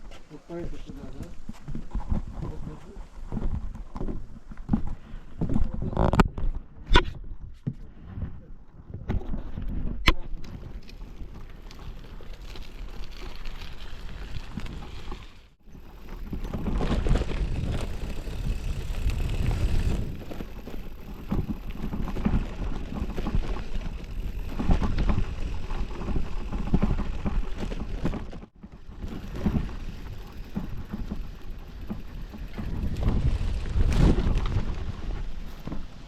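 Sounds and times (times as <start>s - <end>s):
wind buffeting microphone: 15.7s - 28.0s, 28.8s - 36.0s.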